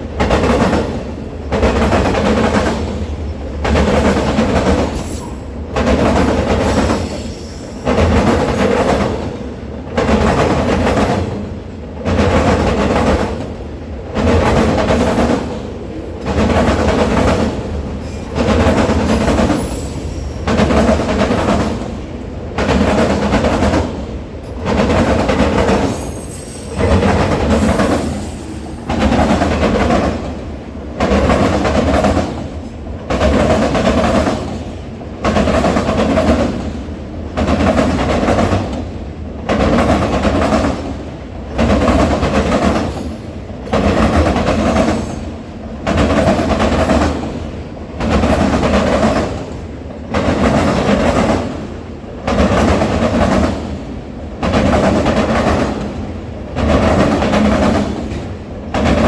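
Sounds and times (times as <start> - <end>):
train wheels clattering: 12.1 - 59.0.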